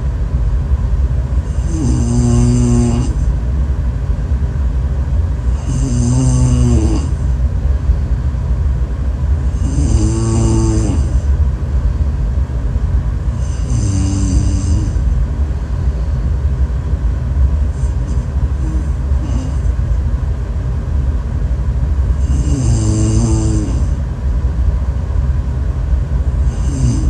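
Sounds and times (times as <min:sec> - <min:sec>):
heavy snoring: 0:01.4 - 0:03.3, 0:05.5 - 0:07.2, 0:09.5 - 0:11.2, 0:13.4 - 0:15.1, 0:17.8 - 0:19.8, 0:22.2 - 0:24.0, 0:26.4 - 0:27.0.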